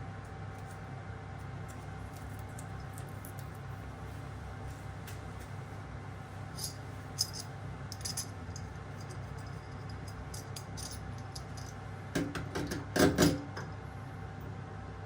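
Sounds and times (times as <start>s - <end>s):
steady low hum: 0.0s - 15.0s
metallic clicks and clinks: 6.6s - 11.8s.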